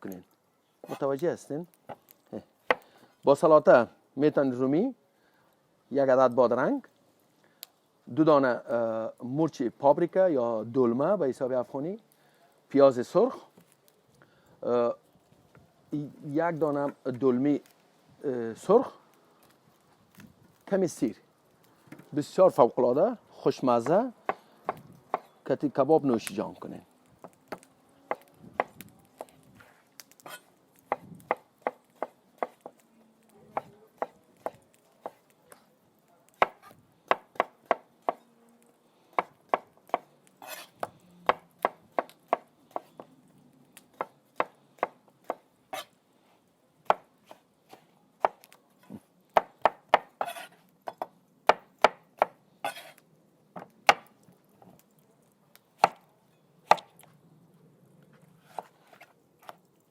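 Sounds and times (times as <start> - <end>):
knife chopping on cutting board: 30.3 - 32.7.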